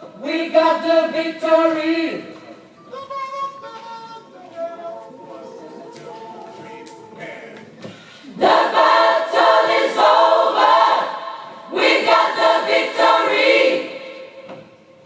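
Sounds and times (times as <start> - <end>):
gospel choir singing: 8.2 - 14.9.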